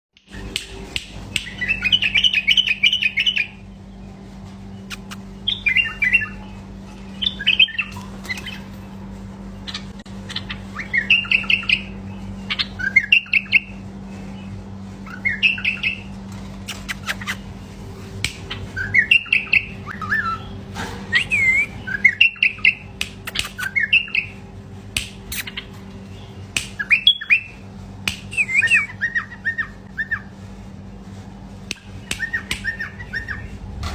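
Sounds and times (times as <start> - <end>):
steady low hum: 0.2 - 33.9
bird singing warbled phrases: 0.3 - 8.7, 9.6 - 24.4, 25.2 - 30.4, 31.8 - 33.8
sharp clicks: 23.0 - 23.7.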